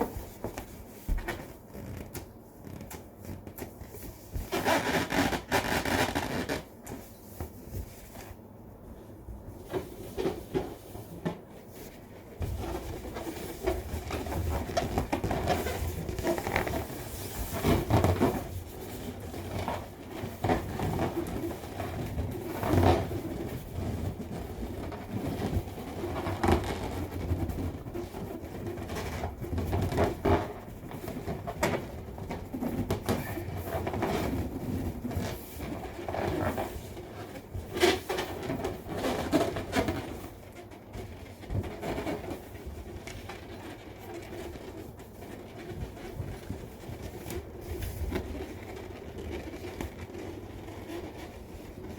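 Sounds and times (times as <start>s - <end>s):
balloon rubbing and puffing: 0.0s - 8.0s
balloon taps or squeaks: 4.4s - 6.7s.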